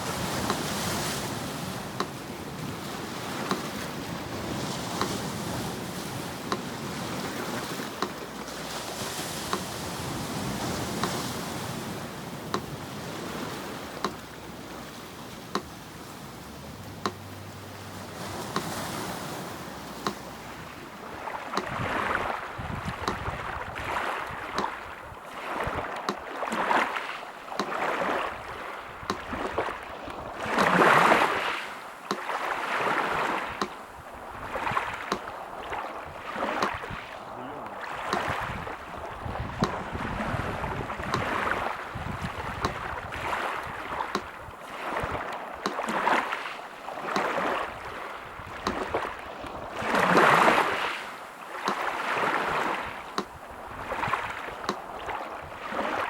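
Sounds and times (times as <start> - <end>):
sea surf washing ashore: 0.0 - 56.0
faint metronome tick: 2.0 - 2.2, 3.4 - 3.7, 5.0 - 5.2, 6.5 - 6.7, 7.9 - 8.4, 9.5 - 9.7, 11.0 - 11.2, 12.5 - 12.8, 14.0 - 15.8, 16.8 - 17.9, 19.8 - 20.4, 35.1 - 35.3, 42.6 - 42.8, 44.1 - 44.3, 54.6 - 54.8.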